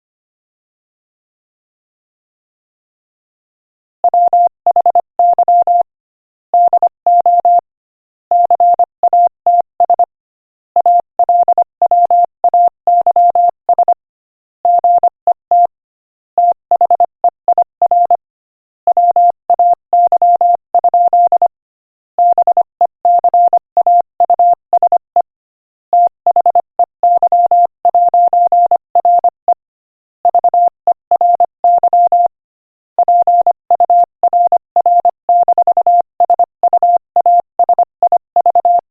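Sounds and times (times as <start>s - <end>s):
morse code beeps: 4.1s - 5.9s, 6.6s - 7.6s, 8.3s - 10.1s, 10.8s - 14.0s, 14.7s - 15.8s, 16.4s - 18.2s, 18.9s - 21.5s, 22.2s - 25.3s, 26.0s - 29.6s, 30.2s - 32.3s, 33.0s - 38.8s.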